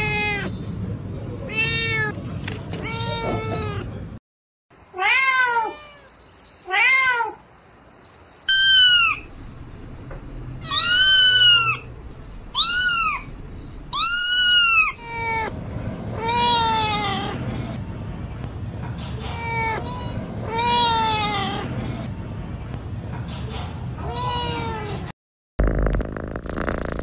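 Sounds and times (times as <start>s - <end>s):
kittens meowing: 2.8s - 3.9s, 8.5s - 9.3s, 10.6s - 11.9s, 12.5s - 13.3s, 13.9s - 15.5s.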